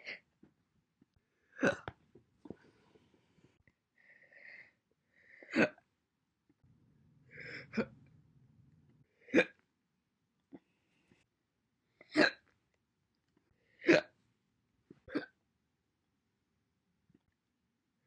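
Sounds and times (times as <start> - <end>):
soft breaths: 2.4 - 5.5, 6.6 - 9.3, 10.5 - 11.3.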